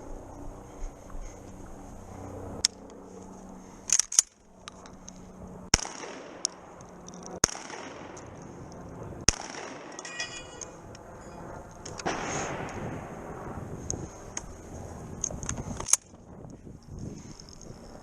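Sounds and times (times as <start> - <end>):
shotgun shots: 5.7 - 6.4, 7.4 - 8.2, 9.3 - 10.0.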